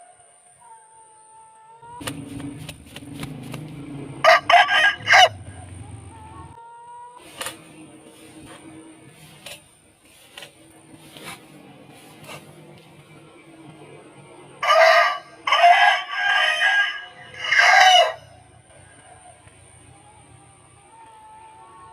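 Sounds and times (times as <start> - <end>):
rooster crowing: 3.3 - 7.2, 14.6 - 21.9.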